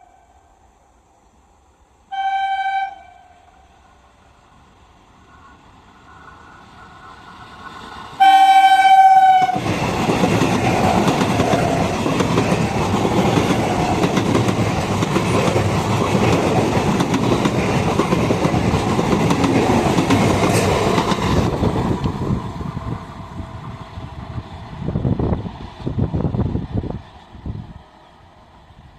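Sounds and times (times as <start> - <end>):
train horn blast: 2.1 - 3.6, 8.2 - 9.6
train wheels clattering on rails: 9.5 - 23.0.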